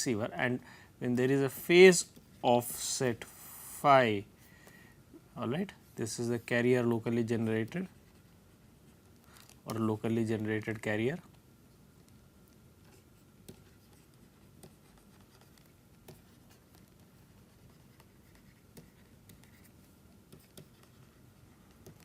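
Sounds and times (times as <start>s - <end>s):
pen scratching paper: 12.8s - 22.0s.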